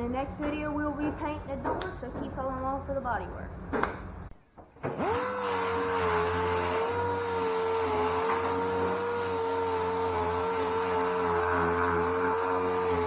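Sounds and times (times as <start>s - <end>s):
sander high-pitched whine: 5.0s - 13.0s.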